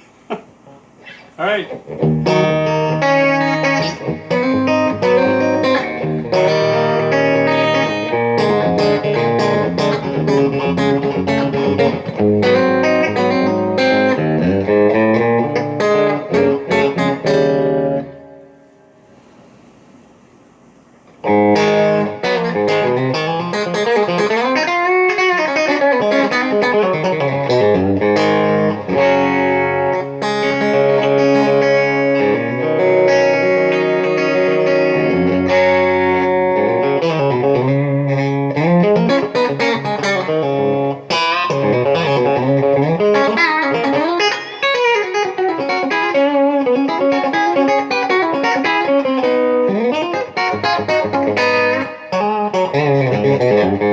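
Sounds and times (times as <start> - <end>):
electric guitar lead line: 0.6 - 19.3, 21.1 - 53.9.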